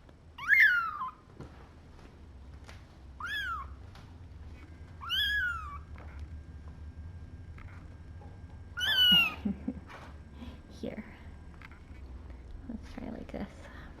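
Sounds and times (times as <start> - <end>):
steady low hum: 0.0 - 14.0
kitten mewing: 3.2 - 3.8, 5.0 - 5.9, 8.8 - 9.5.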